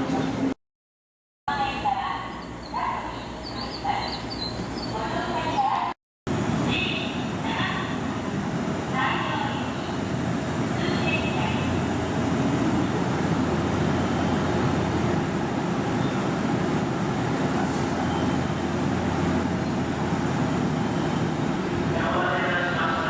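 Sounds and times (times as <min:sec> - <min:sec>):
electric train rumble: 0:06.3 - 0:23.0.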